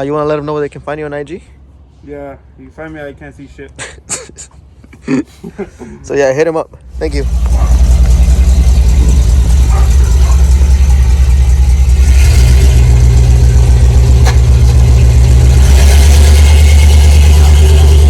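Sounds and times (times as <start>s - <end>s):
pickup engine idling: 6.8s - 18.0s.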